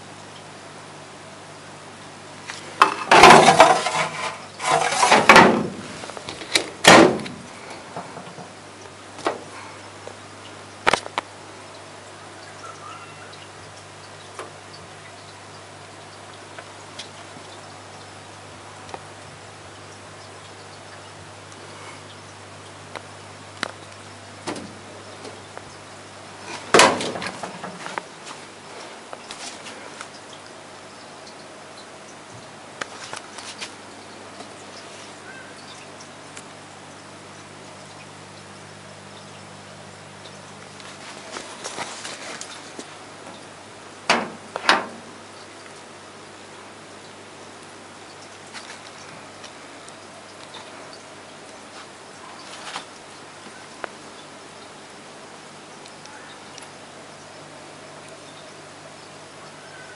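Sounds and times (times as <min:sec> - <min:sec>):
low steady hum: 0:00.0 - 0:59.9
metal stand clunk: 0:02.8 - 0:05.9, 0:26.5 - 0:28.0, 0:44.1 - 0:45.1
short rattle: 0:02.8 - 0:08.5
cabinet door sliding scrape: 0:03.2 - 0:06.0.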